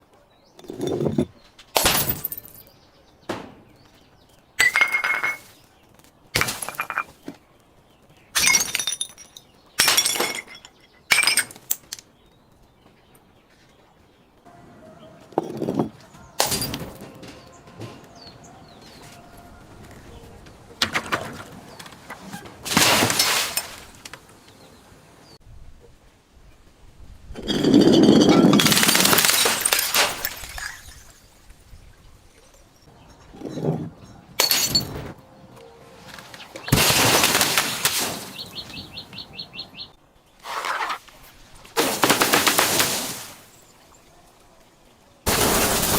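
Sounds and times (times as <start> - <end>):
glass bottles breaking: 0.6 - 2.7, 4.6 - 5.6, 6.4 - 7.2, 8.4 - 12.0, 15.5 - 17.6, 22.6 - 24.0, 27.4 - 31.4, 34.4 - 35.0, 36.6 - 38.7, 41.8 - 43.7, 45.3 - 45.9.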